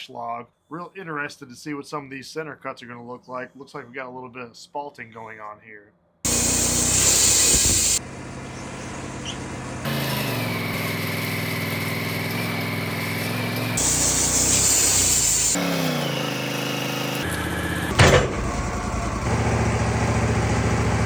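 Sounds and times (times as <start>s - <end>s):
band sawmill engine running: 6.3s - 21.0s.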